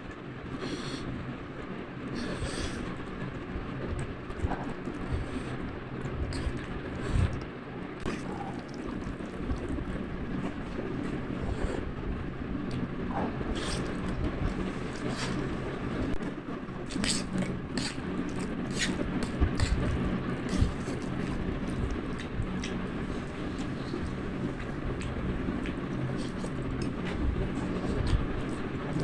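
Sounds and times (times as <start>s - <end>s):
steady low hum: 0.0s - 29.0s
noodle slurping: 8.0s - 11.9s, 13.4s - 16.2s, 16.8s - 29.0s.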